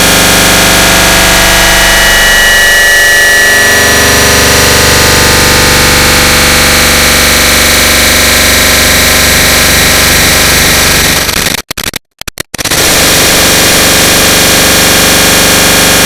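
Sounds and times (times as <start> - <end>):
faint buzzing drone: 0.0 - 11.2
distorted continuous click noise: 0.0 - 14.2.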